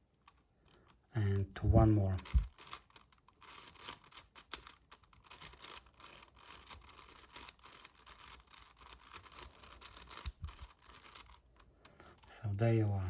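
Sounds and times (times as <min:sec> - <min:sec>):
speed cube clicking and scraping: 0:02.2 - 0:12.4.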